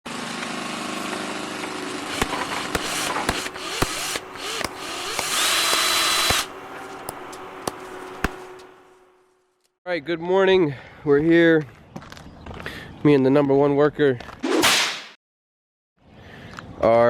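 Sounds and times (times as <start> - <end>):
power tool humming: 0.1 - 8.7.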